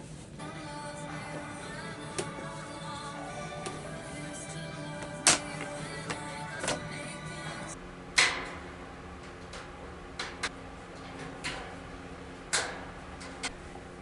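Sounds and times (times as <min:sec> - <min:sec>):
music: 0:00.4 - 0:07.8.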